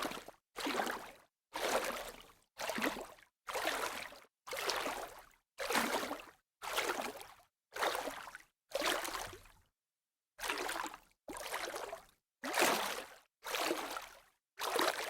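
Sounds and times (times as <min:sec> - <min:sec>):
light water splashes: 0:08.0 - 0:09.5.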